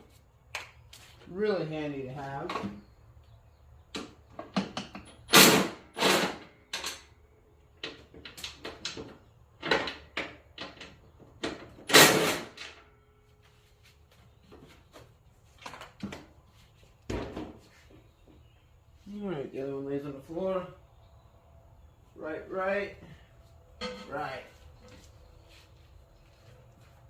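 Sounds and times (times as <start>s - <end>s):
hand tools knocking and clanking: 4.0s - 5.3s, 23.8s - 24.2s.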